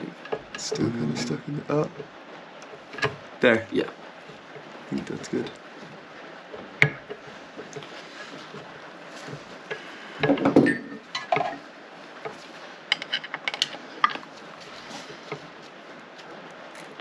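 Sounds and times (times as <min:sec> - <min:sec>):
metal tools clinking: 0:10.3 - 0:11.6.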